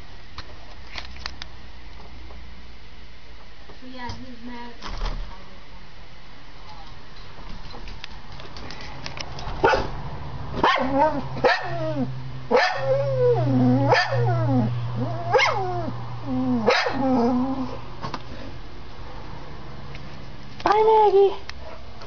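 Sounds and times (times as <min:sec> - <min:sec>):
steady low hum: 0:00.0 - 0:22.0
dog barking and whining: 0:09.6 - 0:10.0, 0:10.6 - 0:17.8, 0:21.6 - 0:21.9.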